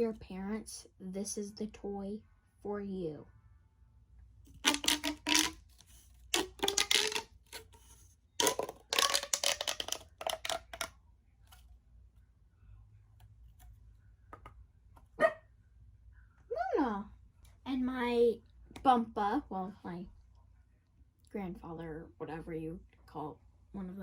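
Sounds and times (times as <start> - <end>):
pop tube pops: 4.6 - 5.6, 6.3 - 7.7, 8.4 - 10.9
pop tubes whirring: 4.6 - 5.6, 6.3 - 7.7, 8.4 - 10.9.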